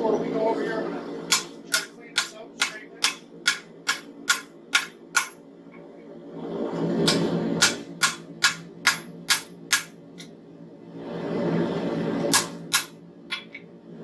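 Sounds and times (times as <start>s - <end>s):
hammer striking metal on anvil: 1.3s - 5.4s, 7.1s - 10.0s, 12.3s - 13.6s.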